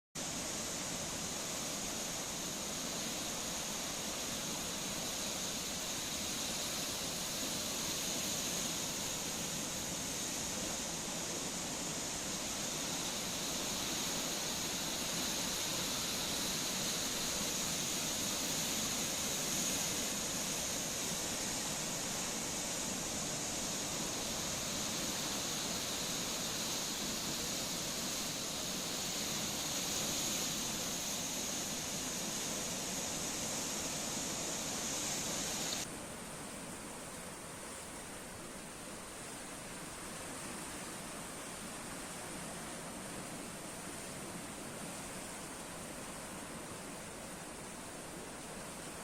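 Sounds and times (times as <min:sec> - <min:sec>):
sea surf rushing: 0:00.2 - 0:35.9.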